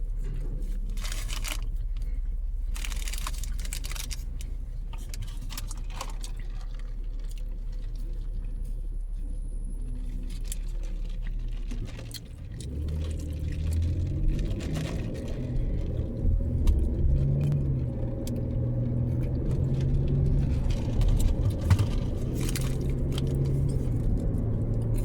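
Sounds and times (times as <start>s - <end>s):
low hum: 0.0s - 11.6s
vehicle rumble: 0.0s - 25.0s
food packaging crinkling: 0.9s - 1.8s, 2.7s - 4.4s.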